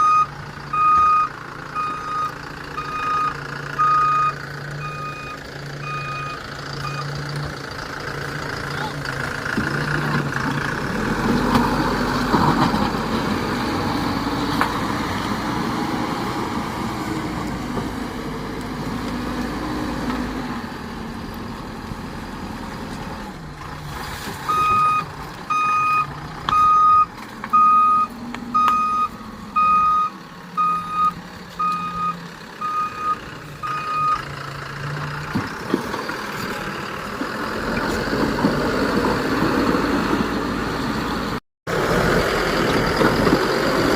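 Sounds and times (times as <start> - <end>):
reversing alarm beeps: 0.0 - 7.1, 24.5 - 34.2
heavy diesel engine running: 0.0 - 43.9.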